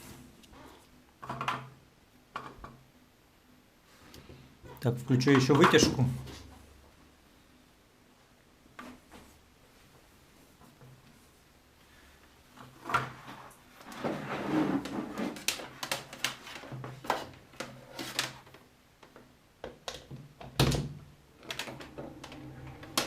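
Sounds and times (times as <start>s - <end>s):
faint low hum: 18.4s - 23.0s.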